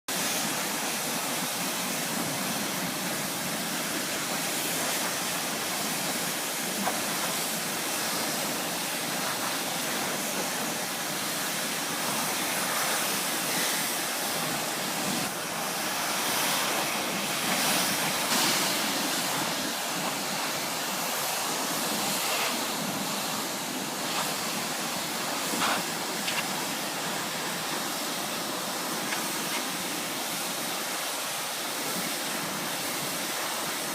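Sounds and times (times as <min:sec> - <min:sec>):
pressure washer spraying: 0:00.2 - 0:31.3.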